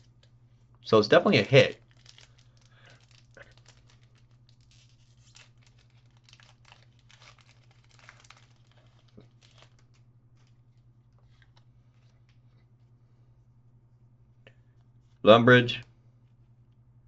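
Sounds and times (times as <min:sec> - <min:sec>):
cards and foil wrapper crinkling: 0:01.3 - 0:12.4.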